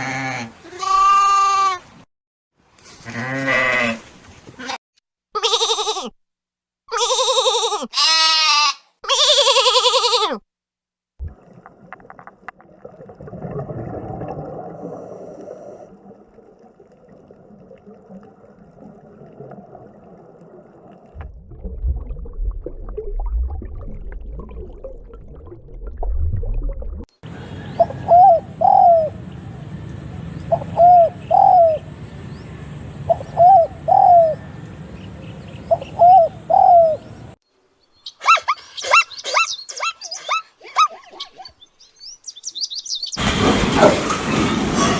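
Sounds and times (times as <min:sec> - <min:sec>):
deep rumble: 0:21.1 - 0:27.1
dove cooing: 0:27.6 - 0:29.2, 0:30.4 - 0:31.8, 0:33.0 - 0:34.5, 0:35.7 - 0:37.2
high bird chirps: 0:41.4 - 0:43.2.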